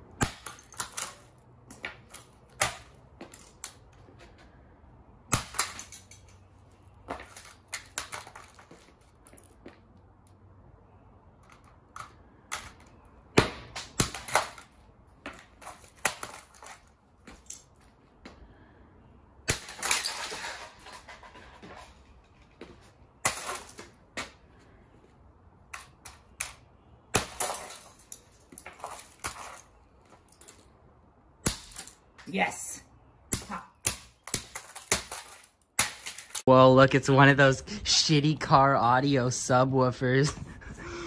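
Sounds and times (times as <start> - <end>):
blows cracking plastic and metal: 19.5 - 21.1
breaking parts rattling: 19.5 - 22.4, 34.4 - 36.4.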